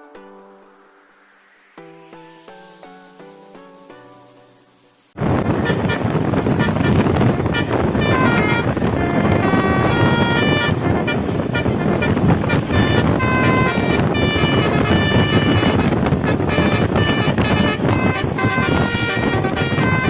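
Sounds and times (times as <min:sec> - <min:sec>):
vehicle noise: 0:05.0 - 0:20.0
wind buffeting microphone: 0:05.2 - 0:20.0
bus air horn playing tune: 0:05.3 - 0:20.0.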